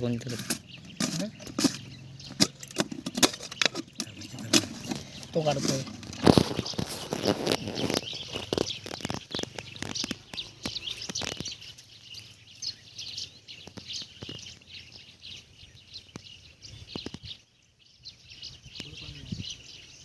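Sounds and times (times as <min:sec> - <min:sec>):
small birds chirping: 0:00.0 - 0:20.0
sharp clicks and knocks: 0:00.2 - 0:11.7.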